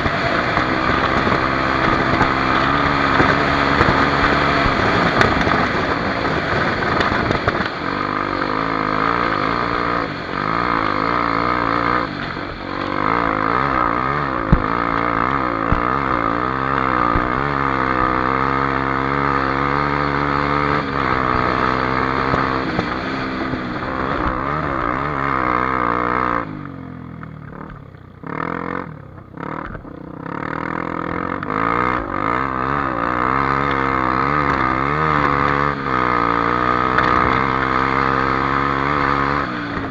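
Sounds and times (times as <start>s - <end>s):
dirt bike engine revving: 0.0s - 39.9s.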